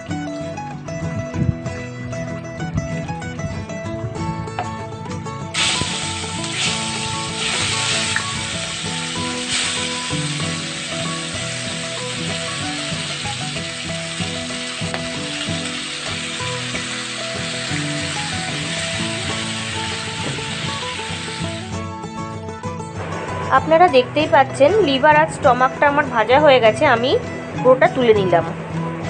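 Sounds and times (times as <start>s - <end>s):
meat sizzling in hot oil: 5.6s - 21.7s.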